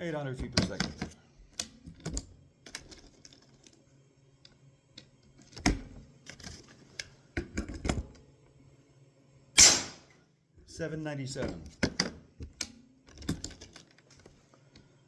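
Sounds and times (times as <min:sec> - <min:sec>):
air rifle cocking clicks: 0:09.6 - 0:10.0.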